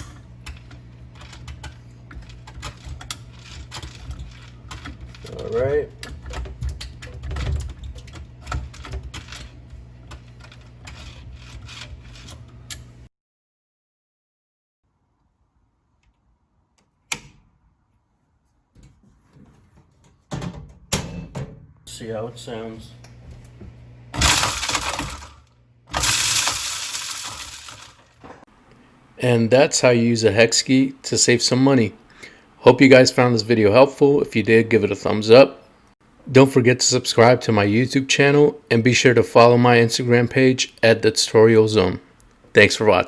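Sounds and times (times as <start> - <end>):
garbage disposal clicking and rattling: 0.0 - 12.8, 24.2 - 28.4.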